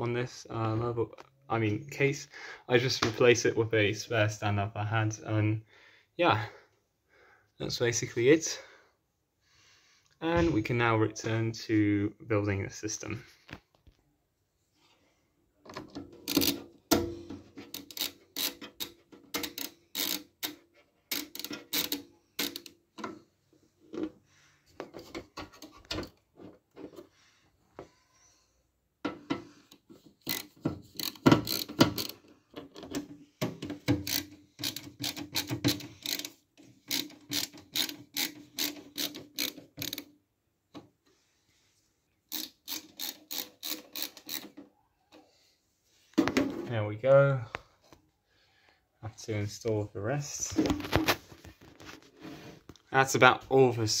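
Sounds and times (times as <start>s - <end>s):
ratcheting screwdriver clicking: 17.7s - 22.8s, 30.2s - 32.2s, 34.0s - 40.1s, 42.3s - 44.5s.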